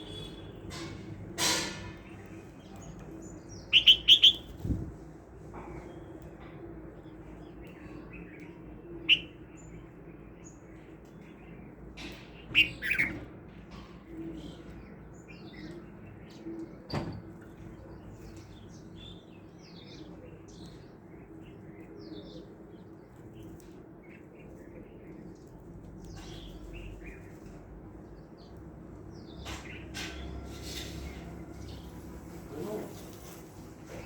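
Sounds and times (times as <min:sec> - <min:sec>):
small birds chirping: 0:00.0 - 0:00.7, 0:02.0 - 0:05.0, 0:06.9 - 0:13.2, 0:17.5 - 0:34.0.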